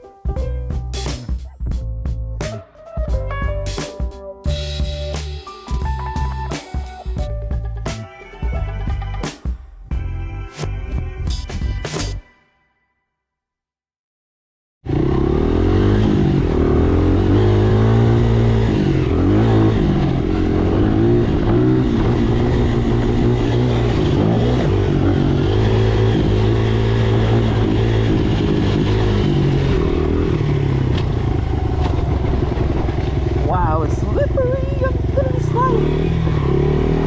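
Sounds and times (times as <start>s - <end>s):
dirt bike engine revving: 14.9s - 37.0s.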